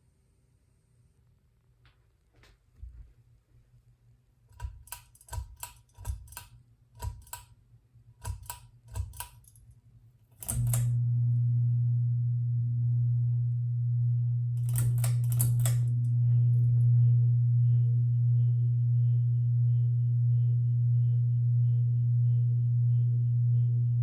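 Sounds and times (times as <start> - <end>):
ceiling fan motor hum: 4.5 - 24.0
sharp clicks: 4.6 - 7.6, 8.2 - 9.6, 10.4 - 10.9, 14.6 - 16.0.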